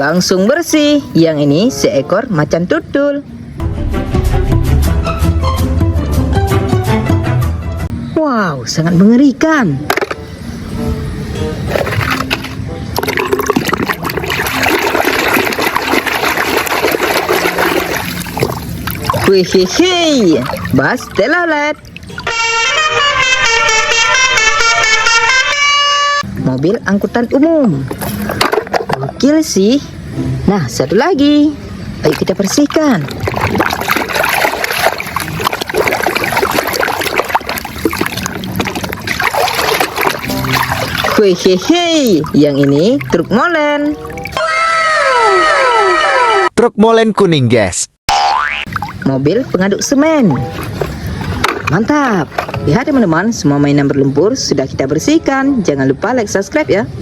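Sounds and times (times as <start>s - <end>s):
water running and splashing: 11.7s - 22.4s, 32.1s - 44.4s, 48.7s - 52.7s.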